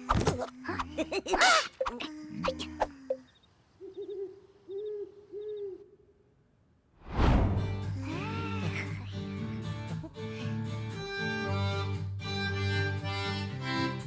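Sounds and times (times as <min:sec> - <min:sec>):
cartoon owl hooting: 0:00.8 - 0:03.2, 0:03.8 - 0:06.2
loud rushing sweep: 0:07.0 - 0:07.8.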